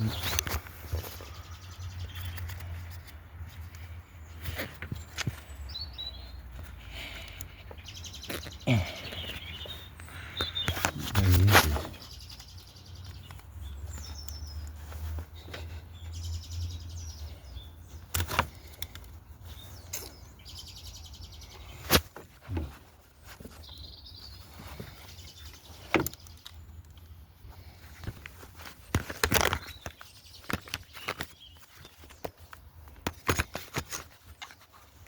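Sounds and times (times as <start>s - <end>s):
birds chirping faintly: 0.0s - 35.0s.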